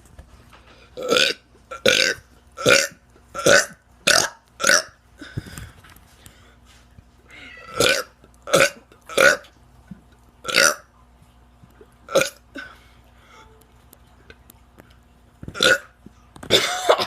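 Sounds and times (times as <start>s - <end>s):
person burping: 7.8s - 9.5s, 10.5s - 10.8s, 12.1s - 12.8s, 15.6s - 15.9s.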